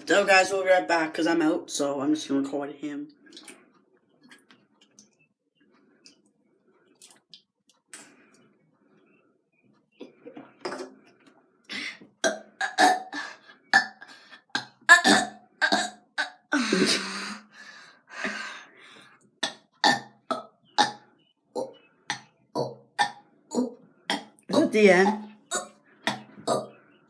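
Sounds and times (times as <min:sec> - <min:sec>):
person burping: 0:10.0 - 0:11.0, 0:11.7 - 0:17.5, 0:19.4 - 0:21.0, 0:21.6 - 0:26.7.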